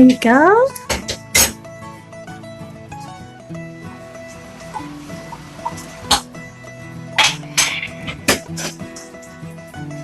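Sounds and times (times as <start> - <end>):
background music: 0.0 - 10.0
kitchen utensils knocking: 4.4 - 6.3, 7.2 - 9.1.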